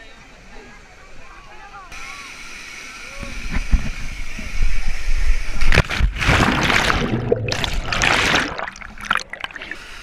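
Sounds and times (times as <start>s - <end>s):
water splashing and rushing: 5.5s - 10.0s.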